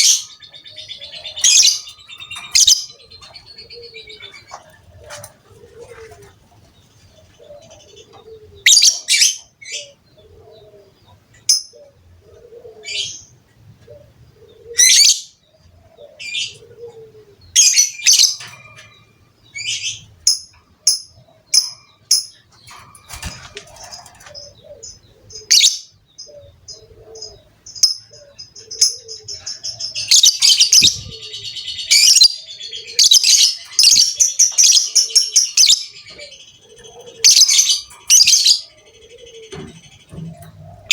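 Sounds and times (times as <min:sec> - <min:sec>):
lovebird chirping and chattering: 0:00.0 - 0:04.6, 0:17.5 - 0:40.9.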